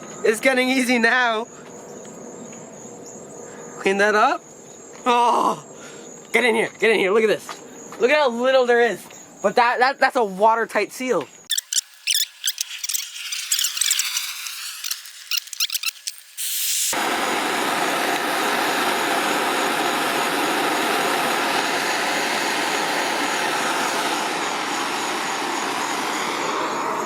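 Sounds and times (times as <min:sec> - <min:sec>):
high-pitched clicks: 0:11.5 - 0:17.0
propane torch hissing: 0:11.8 - 0:23.8.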